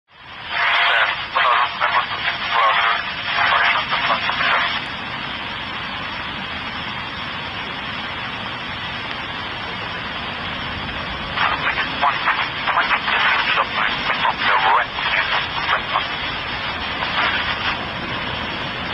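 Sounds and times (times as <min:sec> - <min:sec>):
steady rushing noise: 0:00.1 - 0:18.9
indistinct voices: 0:11.4 - 0:17.8.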